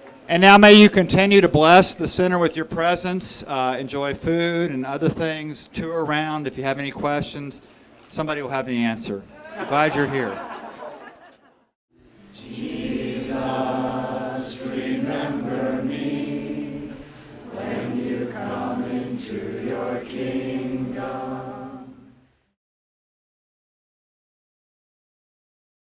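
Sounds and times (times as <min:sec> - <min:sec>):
choir singing held notes: 0:12.2 - 0:22.3.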